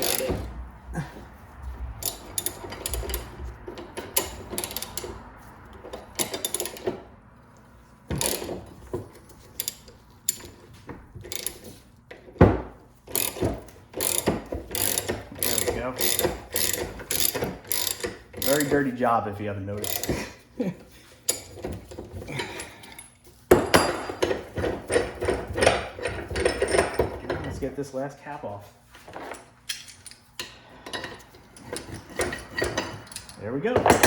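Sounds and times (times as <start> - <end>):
hand tool mechanical strokes: 0.0 - 7.0, 8.1 - 11.9, 13.1 - 20.4.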